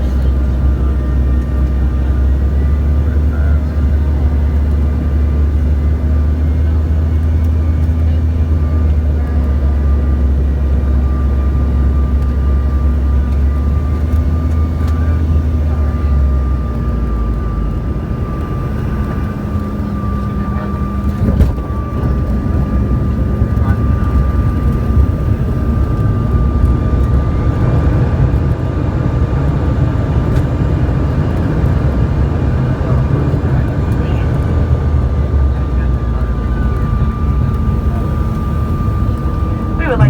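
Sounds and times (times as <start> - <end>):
jet engine cabin rumble: 0.0 - 40.0
thin steady whine: 35.3 - 40.0.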